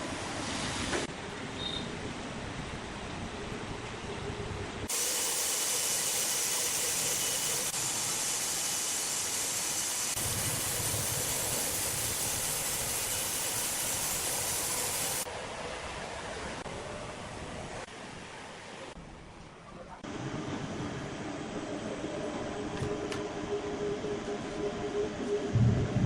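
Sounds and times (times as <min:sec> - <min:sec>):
loud steady hiss: 0:04.9 - 0:15.3.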